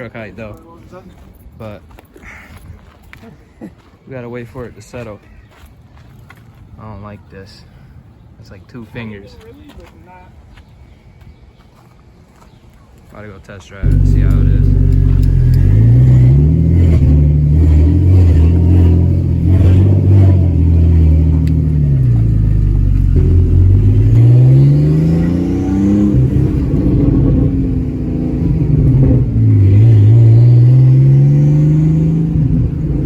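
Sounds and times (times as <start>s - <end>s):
car engine accelerating: 13.8s - 33.0s.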